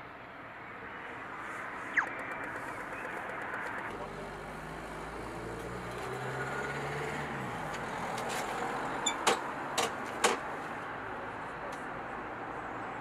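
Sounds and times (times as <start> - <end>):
outdoor background noise: 0.0 - 13.0
sharp clicks or knocks: 2.0 - 3.9
vehicle engine running low: 2.0 - 9.0.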